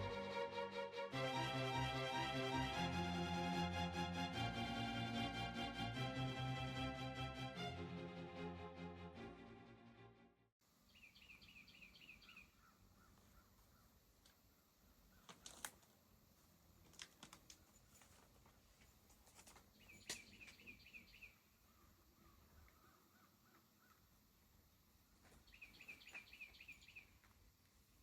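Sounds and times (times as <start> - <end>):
softer lower bird chirps: 10.9 - 13.9, 19.8 - 24.1, 25.4 - 27.2.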